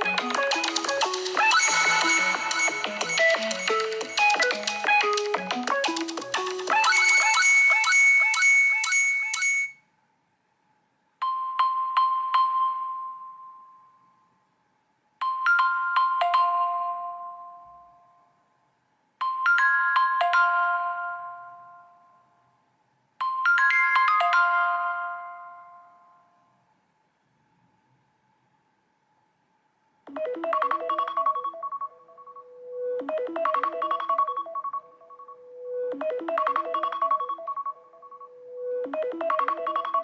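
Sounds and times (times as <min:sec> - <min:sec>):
busy phone ringtone: 0:00.1 - 0:05.2, 0:06.0 - 0:09.8, 0:30.1 - 0:40.0
chiming phone ringtone: 0:00.1 - 0:09.8, 0:15.2 - 0:18.1, 0:19.2 - 0:22.2, 0:23.2 - 0:26.4, 0:30.1 - 0:40.0.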